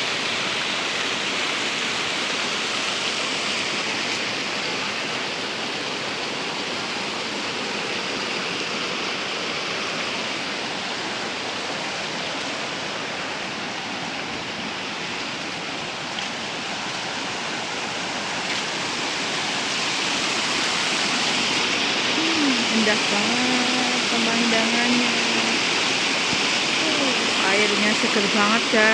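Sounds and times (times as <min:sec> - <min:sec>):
waterfall splashing into pool: 0:23.4 - 0:28.9.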